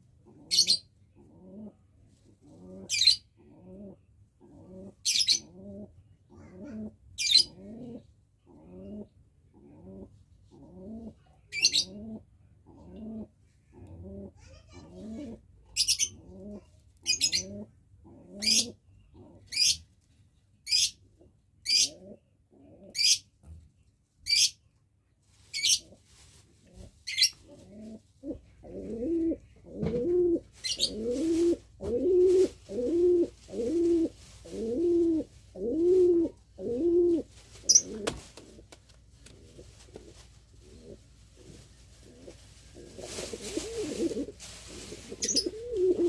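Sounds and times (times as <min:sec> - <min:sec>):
pigeon high-pitched rasps: 0:00.2 - 0:01.8, 0:02.4 - 0:19.9, 0:21.6 - 0:23.7, 0:30.0 - 0:38.1, 0:40.6 - 0:46.0
pigeon cooing: 0:00.2 - 0:19.8, 0:20.7 - 0:23.6, 0:26.7 - 0:46.0.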